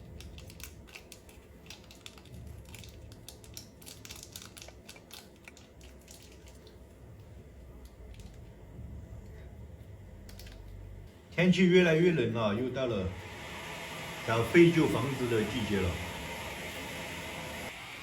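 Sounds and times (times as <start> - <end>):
packaging clicks and rustles: 0.0 - 6.8
steady low rumble: 6.8 - 11.4.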